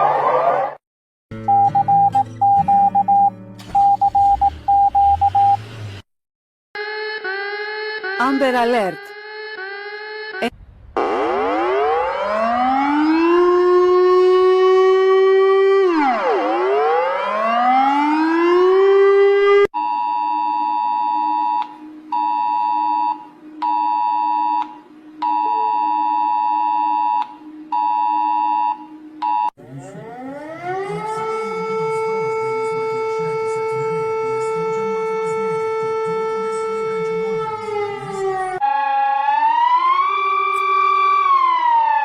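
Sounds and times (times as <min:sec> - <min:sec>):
siren wailing: 0:00.0 - 0:00.8, 0:06.8 - 0:19.7, 0:20.4 - 0:42.0
high alarm tones: 0:19.8 - 0:38.8.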